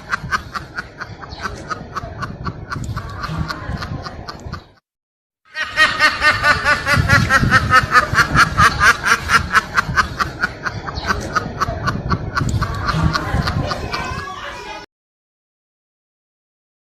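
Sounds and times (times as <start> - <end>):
snickering laughs: 0.0 - 4.7, 5.6 - 14.2.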